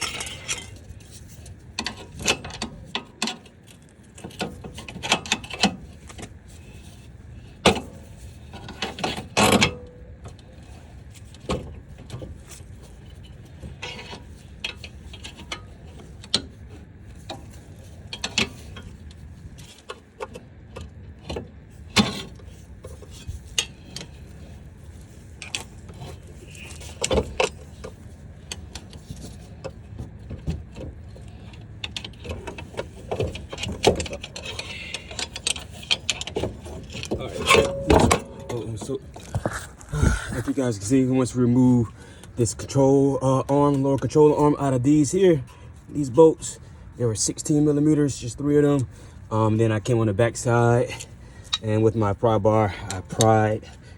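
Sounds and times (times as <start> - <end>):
hand tools clicking and clanking: 0.0 - 7.0, 7.6 - 41.0.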